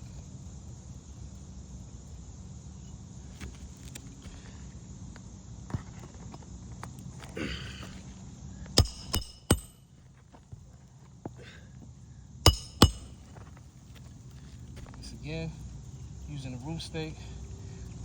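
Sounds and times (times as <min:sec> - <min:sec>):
hammer striking roofing nails: 0:08.8 - 0:09.8, 0:12.5 - 0:13.2.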